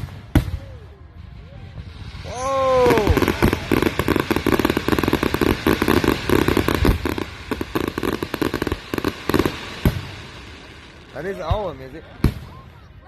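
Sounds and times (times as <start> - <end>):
fireworks crackling: 0.0 - 13.0
firework bang: 2.2 - 10.2.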